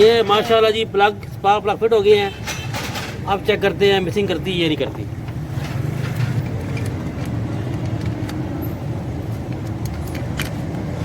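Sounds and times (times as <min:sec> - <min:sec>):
vehicle engine humming: 0:03.7 - 0:11.0.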